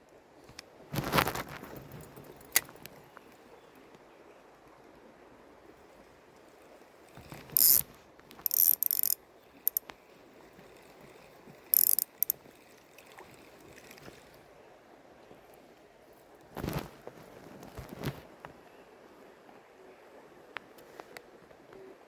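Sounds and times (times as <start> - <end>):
fishing reel ratcheting: 7.1 - 14.4.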